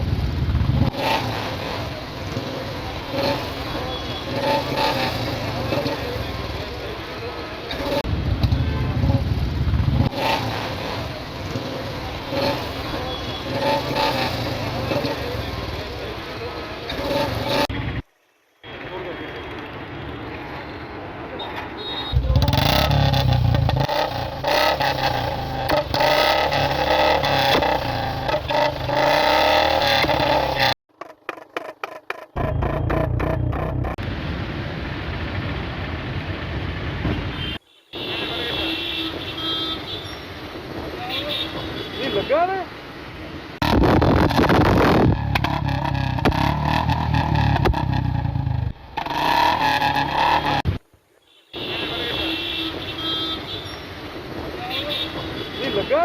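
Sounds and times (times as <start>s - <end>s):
motorcycle engine revving: 0.0s - 17.9s, 22.1s - 34.1s, 43.6s - 50.8s
motorcycle engine running: 22.1s - 30.8s, 31.6s - 34.0s, 43.6s - 50.7s.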